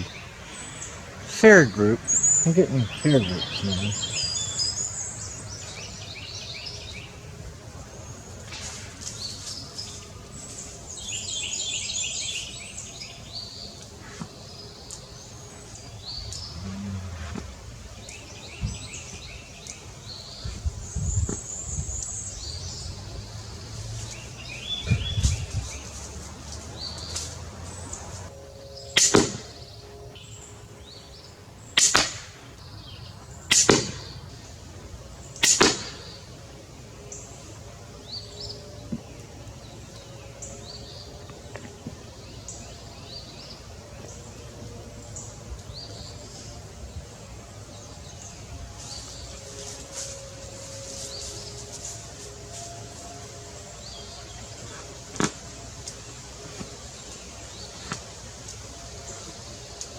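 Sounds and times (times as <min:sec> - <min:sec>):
birds chirping: 0:00.0 - 0:59.9
crossbow shots: 0:31.8 - 0:32.4, 0:33.5 - 0:34.1, 0:35.4 - 0:36.1.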